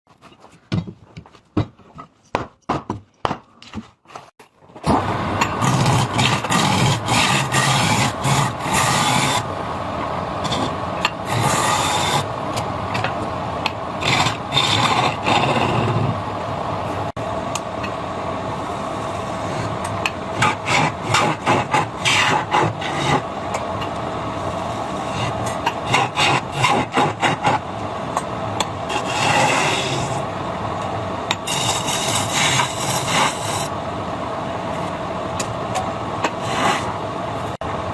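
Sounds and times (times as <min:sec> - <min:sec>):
wood lathe hum: 0:05.1 - 0:09.7, 0:10.4 - 0:12.4, 0:13.9 - 0:16.2
chisel scraping spinning wood: 0:05.4 - 0:09.5, 0:10.4 - 0:12.3, 0:12.9 - 0:16.2, 0:19.2 - 0:23.7, 0:24.4 - 0:27.7, 0:28.9 - 0:30.2, 0:31.3 - 0:33.7, 0:36.2 - 0:37.0.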